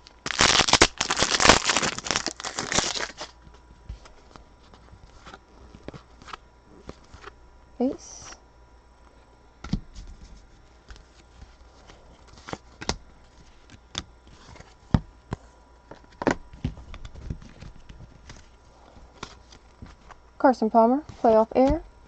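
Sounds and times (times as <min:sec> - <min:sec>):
cards sliding: 0:10.8 - 0:16.1.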